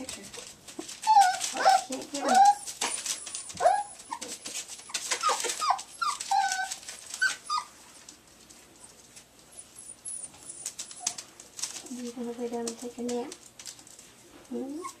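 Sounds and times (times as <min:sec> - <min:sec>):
puppies whimpering: 0:00.8 - 0:07.8.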